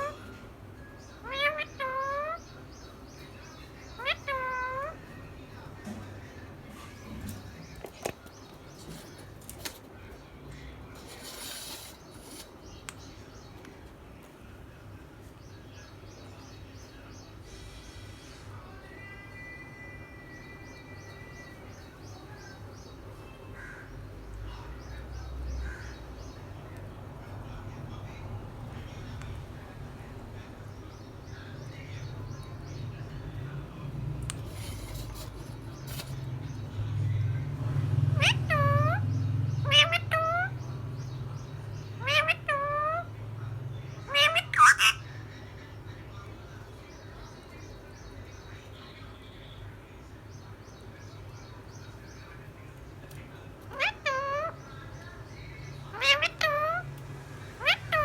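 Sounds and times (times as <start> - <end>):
parrot chirping softly: 0.0 - 9.8, 34.2 - 45.7, 51.6 - 58.0
parrot hissing: 11.0 - 12.5, 34.4 - 36.2.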